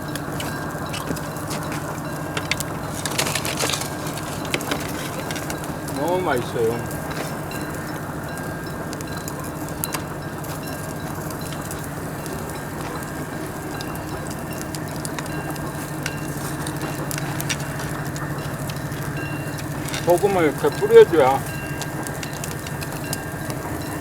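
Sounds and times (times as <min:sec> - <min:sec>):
fire crackling: 0:00.0 - 0:24.0
meat sizzling on a grill: 0:05.6 - 0:24.0.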